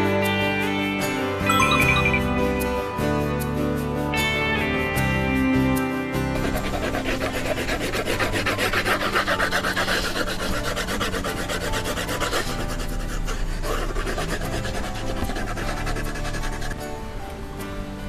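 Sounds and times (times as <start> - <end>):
pencil scratching on paper: 6.2 - 16.9.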